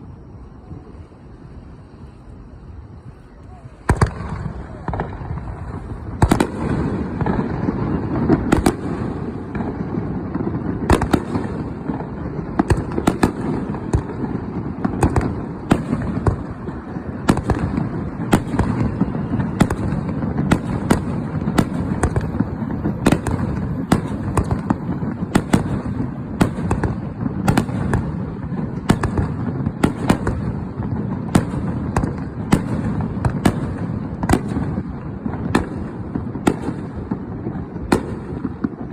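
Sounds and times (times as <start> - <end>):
fireworks bangs and cracks: 0.0 - 38.9.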